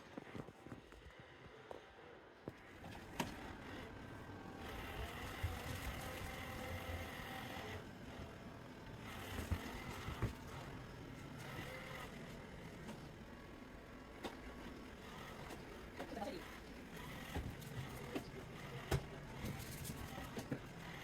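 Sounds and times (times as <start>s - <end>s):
robot vacuum motor and brush whir: 0.0s - 21.0s.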